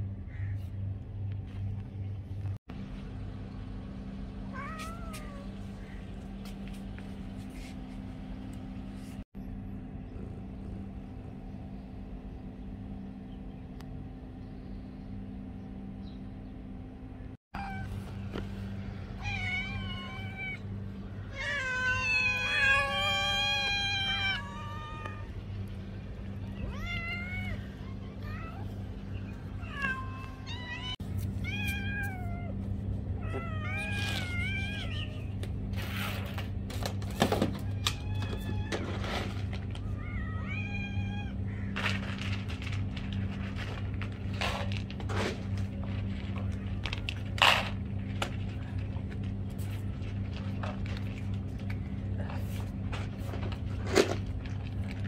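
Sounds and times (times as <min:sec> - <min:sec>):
low hum: 0:00.0 - 0:55.0
cat meowing: 0:21.3 - 0:25.3.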